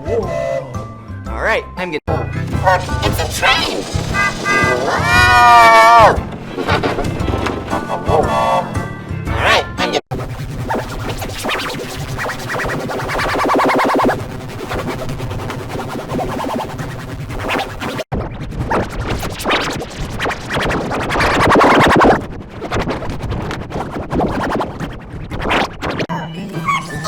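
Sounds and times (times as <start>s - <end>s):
electronic music: 2.1s - 6.4s
glitchy stuttering scratch sound: 2.5s - 7.9s, 9.8s - 26.1s.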